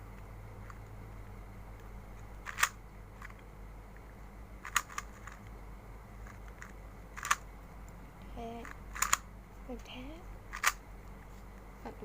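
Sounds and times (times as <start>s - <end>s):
steady low hum: 0.0s - 12.0s
sharp plastic clicks: 1.8s - 3.4s, 4.6s - 5.4s, 6.3s - 8.0s, 8.6s - 9.2s, 10.5s - 10.8s.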